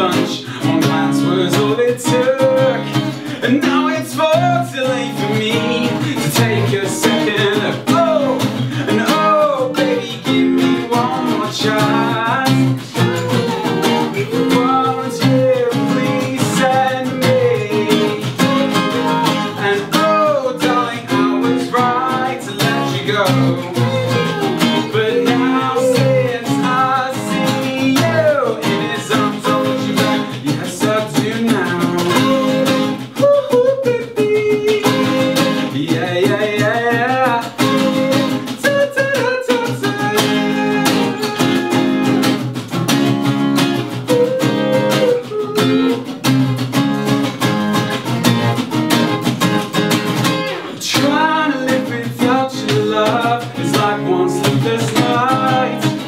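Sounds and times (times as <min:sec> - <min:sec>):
guitar strummed in a steady beat: 0:00.0 - 0:56.0
live band playing pop: 0:10.3 - 0:33.4, 0:39.7 - 0:56.0
person singing held notes: 0:11.2 - 0:15.3, 0:23.3 - 0:26.9, 0:44.0 - 0:46.2.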